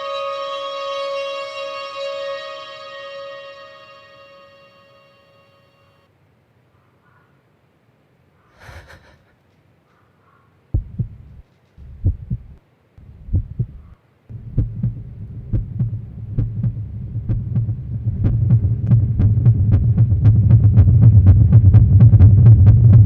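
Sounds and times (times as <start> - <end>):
continuous low hum: 0.0 - 23.0
deep throbbing thuds: 10.8 - 23.0.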